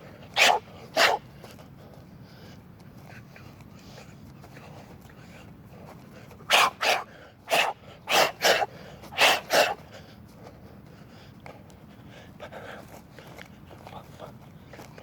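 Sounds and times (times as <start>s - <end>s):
sharp forceful exhalations: 6.5s - 9.8s.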